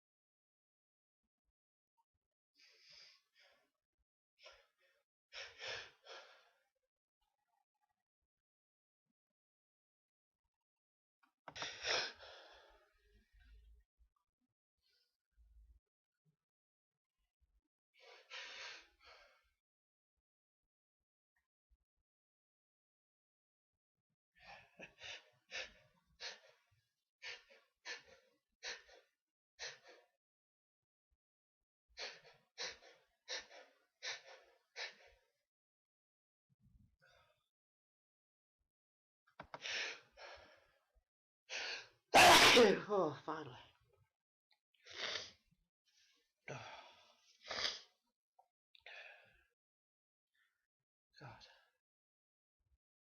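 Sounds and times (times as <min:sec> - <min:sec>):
person gasping breaths: 0:46.5 - 0:47.8.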